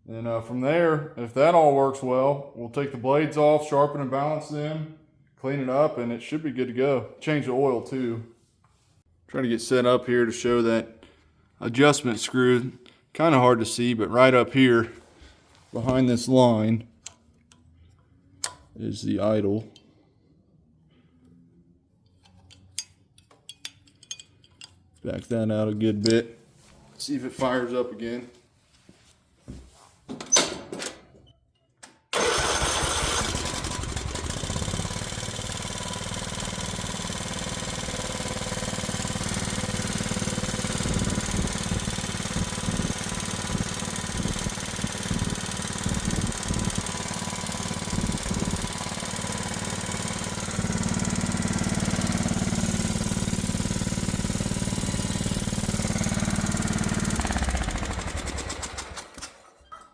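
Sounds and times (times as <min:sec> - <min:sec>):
engine tapping: 0:32.2 - 0:59.2
mower engine running: 0:32.2 - 0:59.5.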